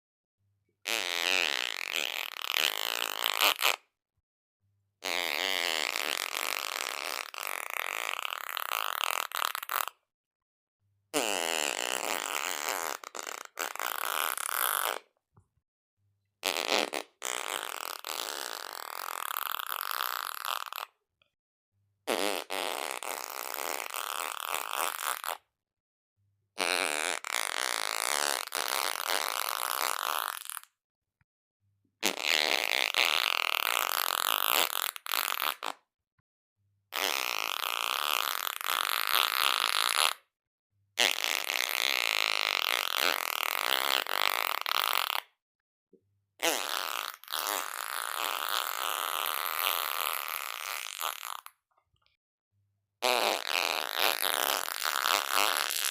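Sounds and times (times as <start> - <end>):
fart sounds: 0.8 - 3.8, 5.0 - 10.0, 11.1 - 15.1, 16.4 - 21.0, 22.1 - 25.5, 26.6 - 30.7, 32.0 - 35.9, 36.9 - 40.3, 41.0 - 45.4, 46.4 - 51.6, 53.0 - 55.9.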